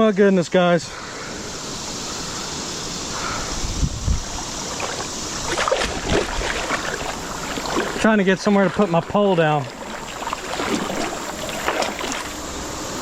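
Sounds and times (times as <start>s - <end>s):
creek rushing: 0.9s - 13.0s
short splashes: 4.2s - 12.4s.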